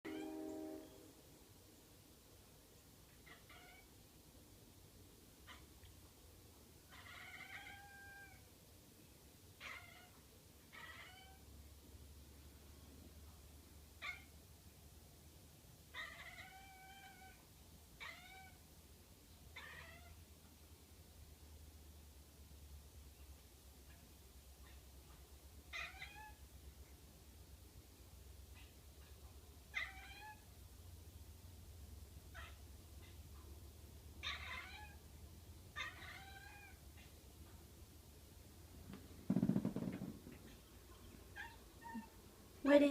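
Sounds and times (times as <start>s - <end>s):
cat chirping: 3.2s - 3.9s, 6.9s - 8.4s, 9.6s - 11.4s, 16.0s - 17.4s, 18.0s - 18.6s, 25.7s - 26.4s, 29.7s - 30.4s, 34.2s - 35.0s, 35.7s - 37.1s, 40.9s - 42.2s.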